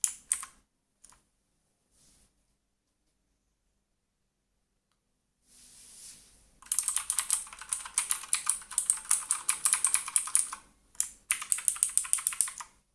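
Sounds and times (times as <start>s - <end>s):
mechanical keyboard typing: 0.0s - 1.2s, 6.6s - 12.8s
soft hiss: 5.4s - 6.6s.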